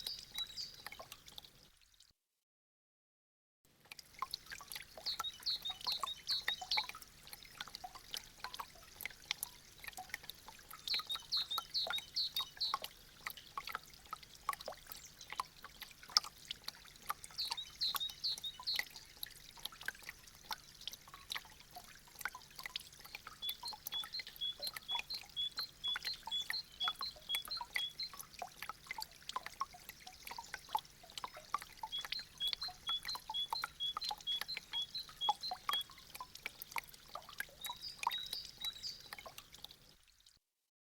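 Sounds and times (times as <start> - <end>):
meltwater dripping and trickling: 0.0 - 2.1, 3.7 - 40.4
high chirping: 31.9 - 35.9.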